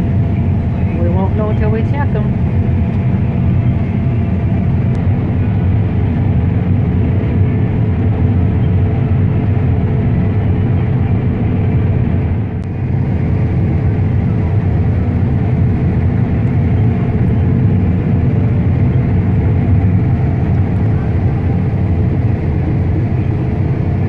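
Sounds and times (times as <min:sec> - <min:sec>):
diesel engine drone: 0:00.0 - 0:24.0.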